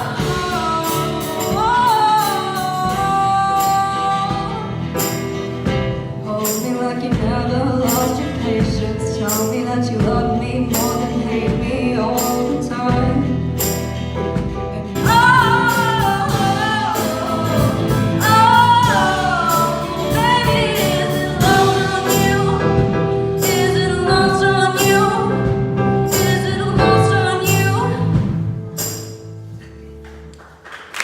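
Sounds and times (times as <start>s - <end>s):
person singing a ballad: 0.0s - 29.0s.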